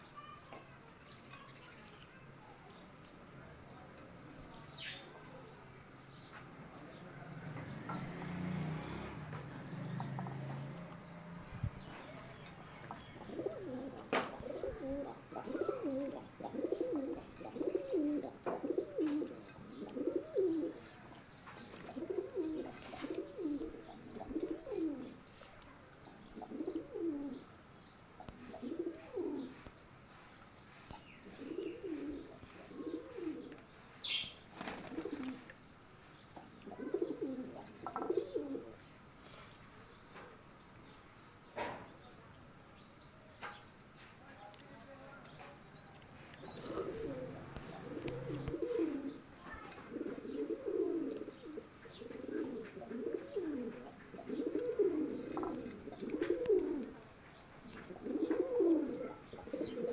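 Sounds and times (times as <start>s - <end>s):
pigeons cooing: 11.7s - 21.0s, 21.6s - 25.4s, 26.2s - 27.5s, 28.2s - 29.6s, 31.2s - 35.6s, 36.4s - 38.8s, 46.4s - 59.9s.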